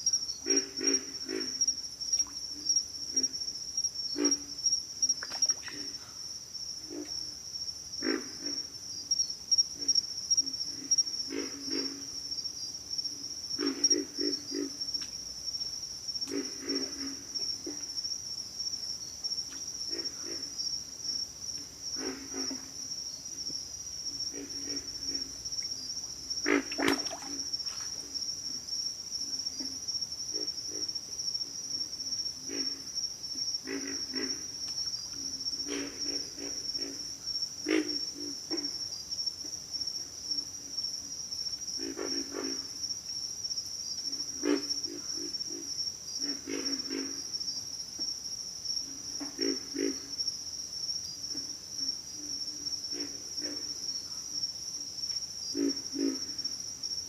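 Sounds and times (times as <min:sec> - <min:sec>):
frogs grunting: 0:00.4 - 0:03.5, 0:04.1 - 0:04.6, 0:05.2 - 0:06.2, 0:07.9 - 0:08.7, 0:09.8 - 0:12.2, 0:13.6 - 0:15.0, 0:16.2 - 0:18.1, 0:19.8 - 0:21.2, 0:21.8 - 0:22.9, 0:24.0 - 0:28.3, 0:32.4 - 0:38.8, 0:44.2 - 0:47.4, 0:49.0 - 0:50.2, 0:51.4 - 0:54.0, 0:55.5 - 0:56.6.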